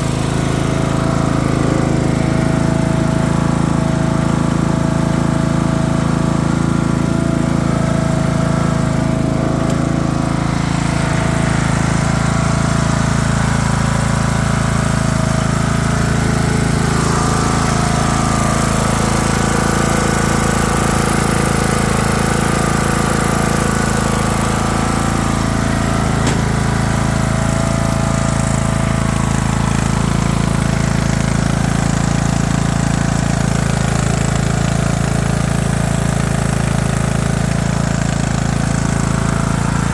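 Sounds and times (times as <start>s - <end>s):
riding mower engine running: 0.0s - 39.9s.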